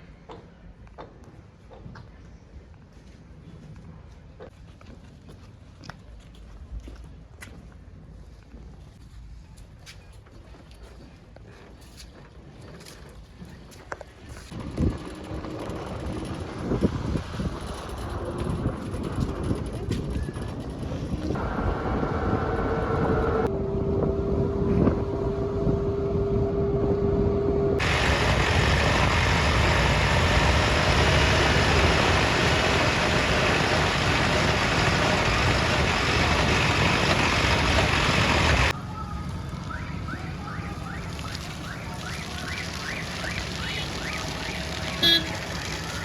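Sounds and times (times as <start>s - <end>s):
heavy diesel machinery running: 17.5s - 38.8s, 40.7s - 46.0s
steady whine: 25.0s - 38.7s.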